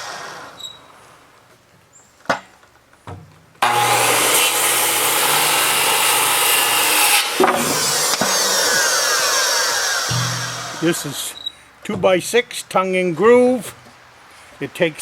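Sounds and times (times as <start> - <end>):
power saw cutting boards: 0.0 - 0.7, 3.6 - 11.4
wooden knocks: 10.1 - 10.8.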